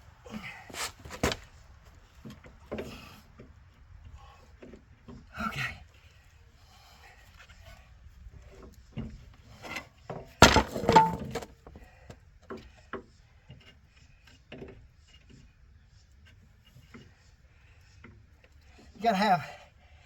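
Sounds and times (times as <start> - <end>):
loud metal clatter: 10.4 - 11.5
knocks and scrapes of metal parts: 10.4 - 11.8.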